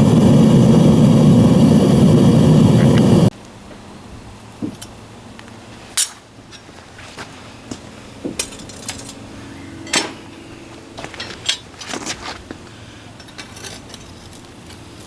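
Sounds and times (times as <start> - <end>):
steady low hum: 0.0 - 15.0
metal tools clinking and knocking: 8.2 - 12.5, 13.1 - 14.5.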